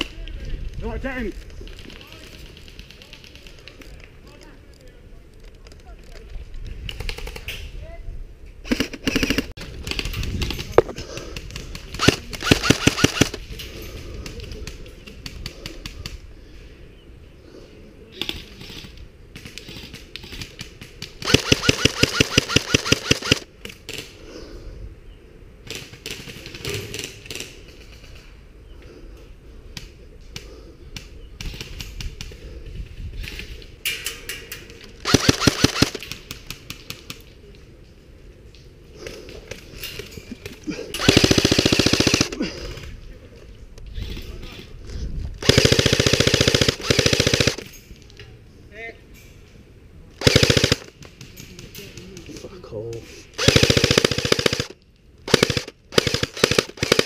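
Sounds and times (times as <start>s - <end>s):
airsoft rifle full-auto bursts: 12.0s - 13.4s, 21.2s - 23.5s, 35.0s - 36.0s, 41.0s - 42.4s, 45.4s - 47.6s, 50.2s - 50.9s, 53.4s - 57.0s.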